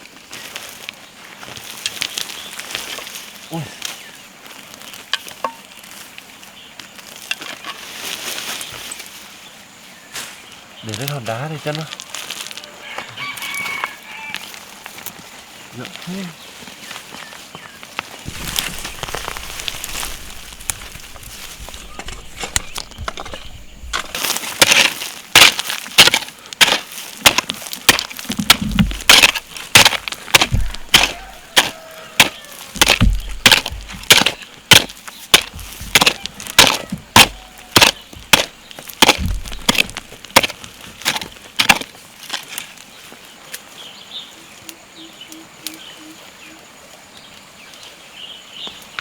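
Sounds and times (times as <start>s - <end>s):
heavier thuds: 18.2s - 24.2s, 27.9s - 40.4s.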